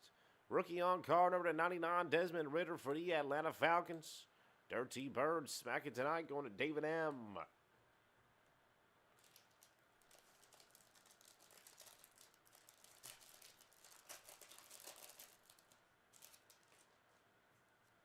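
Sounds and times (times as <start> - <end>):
packaging crinkling: 9.1 - 17.3.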